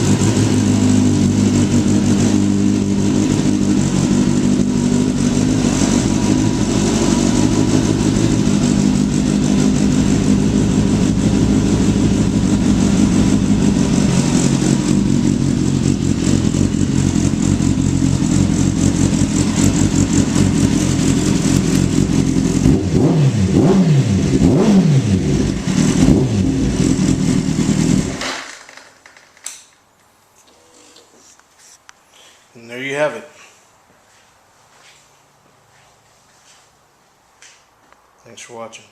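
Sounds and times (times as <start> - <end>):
motorcycle engine idling and revving: 0.0 - 28.2.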